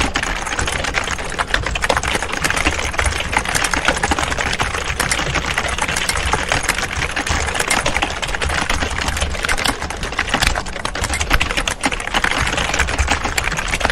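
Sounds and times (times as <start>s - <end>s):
keyboard typing clatter: 0.0s - 13.9s.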